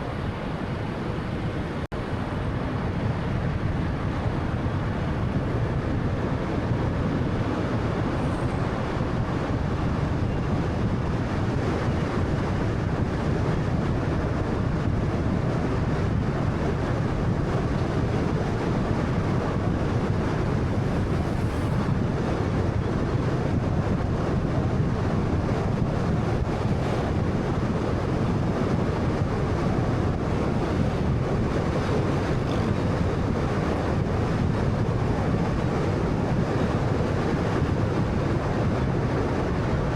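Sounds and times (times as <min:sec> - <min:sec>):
car road noise: 0:00.0 - 0:39.9.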